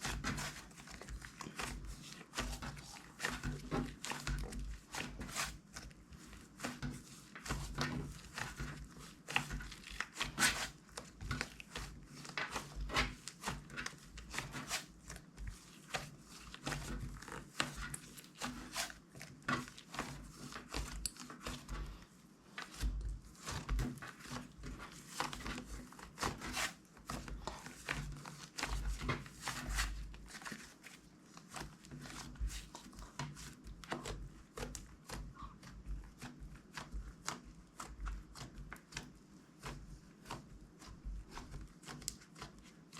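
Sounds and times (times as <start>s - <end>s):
slime squishing by hand: 0.0s - 42.9s.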